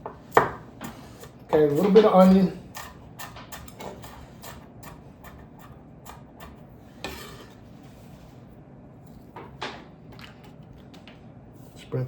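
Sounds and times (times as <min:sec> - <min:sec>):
knife cutting onion on board: 0:00.0 - 0:07.6.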